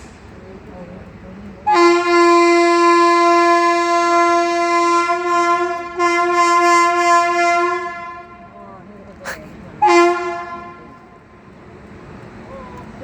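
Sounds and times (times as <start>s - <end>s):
locomotive air horn blast: 1.6s - 8.5s, 9.8s - 11.1s.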